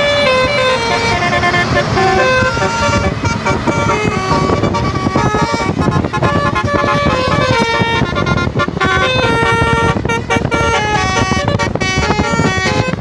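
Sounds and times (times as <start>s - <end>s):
multi-tone bus horn tune: 0.0s - 13.0s.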